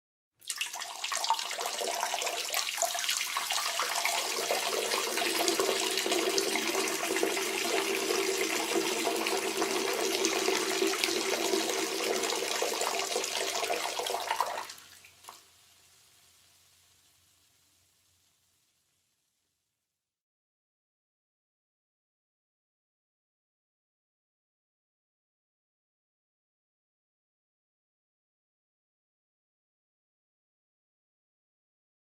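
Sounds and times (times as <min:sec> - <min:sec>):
person urinating into water: 0:00.4 - 0:15.5.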